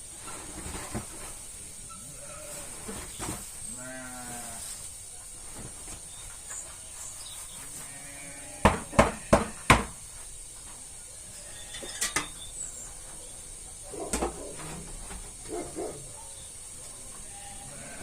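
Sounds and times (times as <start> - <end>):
sheep bleating: 3.7 - 4.7, 7.8 - 9.7, 17.2 - 18.0
sharp knocks: 8.6 - 10.0.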